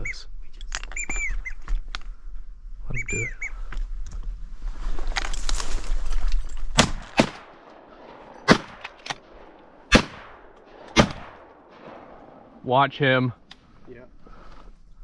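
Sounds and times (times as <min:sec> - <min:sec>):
shotgun blasts: 0:06.7 - 0:12.6.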